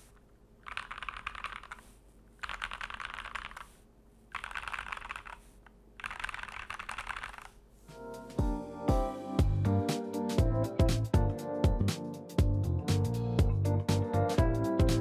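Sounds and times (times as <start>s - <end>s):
mechanical keyboard typing: 0.6s - 7.6s.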